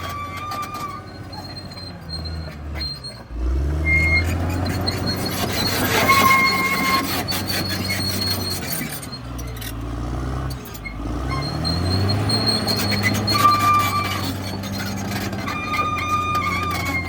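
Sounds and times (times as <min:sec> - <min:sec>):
bulldozer diesel engine running: 0:00.0 - 0:17.0
high-pitched metallic squeals: 0:00.0 - 0:17.0.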